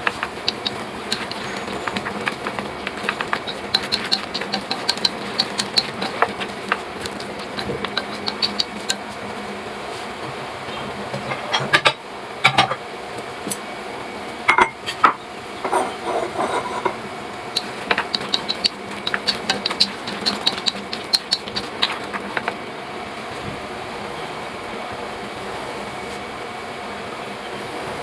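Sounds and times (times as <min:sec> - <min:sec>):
utensils clinking against dishes: 0:00.0 - 0:09.0, 0:14.5 - 0:22.6
steady background hiss: 0:00.0 - 0:28.0.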